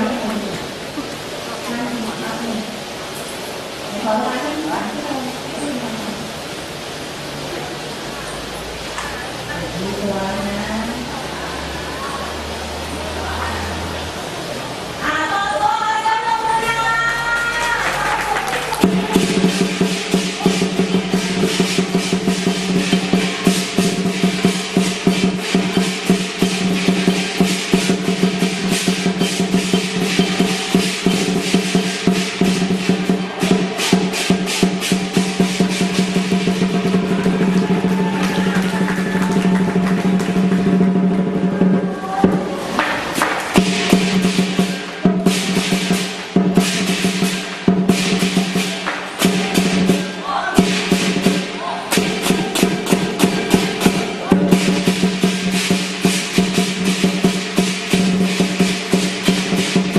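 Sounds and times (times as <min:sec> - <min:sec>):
large drum roll: 0:16.4 - 0:59.9
crashing cymbals: 0:18.6 - 0:59.9.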